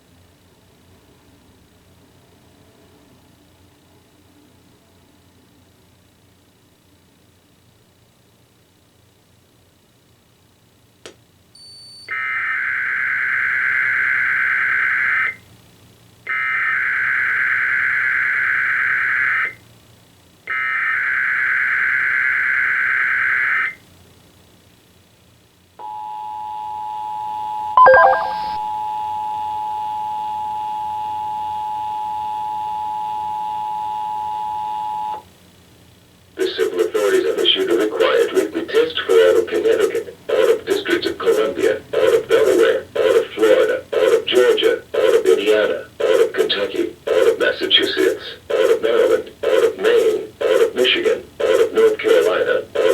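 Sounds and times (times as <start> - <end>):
short high beep: 27.8 - 28.7
steady two-tone attention signal: 27.8 - 28.7.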